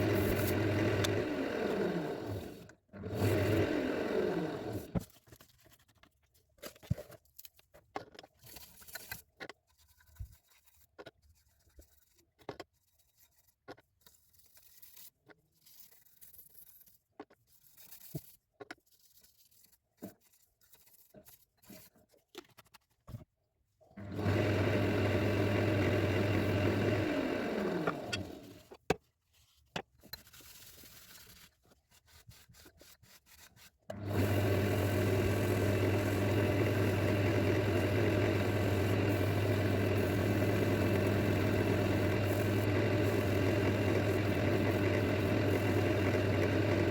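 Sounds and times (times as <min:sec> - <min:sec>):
electric workshop machine humming: 0:00.0 - 0:05.0, 0:24.0 - 0:28.7, 0:33.9 - 0:46.9.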